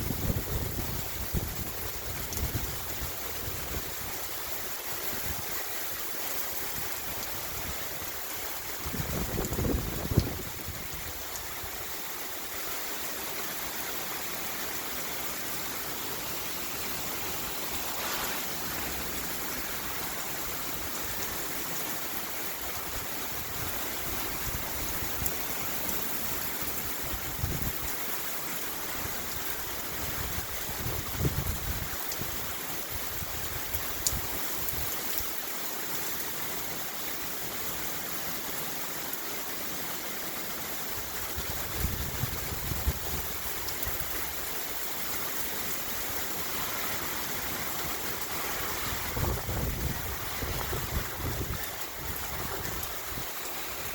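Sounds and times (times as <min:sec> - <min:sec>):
wind rumbling on microphone: 0:00.0 - 0:04.3, 0:08.6 - 0:11.8, 0:26.8 - 0:27.9, 0:29.9 - 0:34.9, 0:41.3 - 0:44.4, 0:47.8 - 0:53.9
heavy rain hissing: 0:00.0 - 0:53.9.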